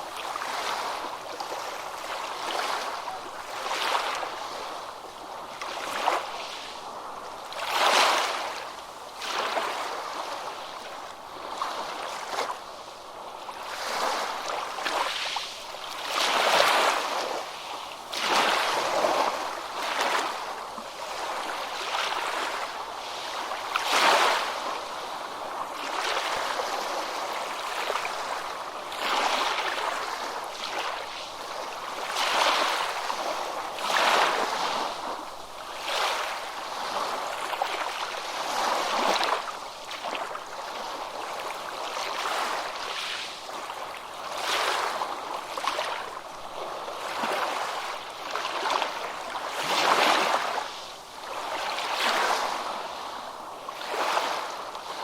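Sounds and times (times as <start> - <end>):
ocean waves breaking on beach: 0.0 - 55.0.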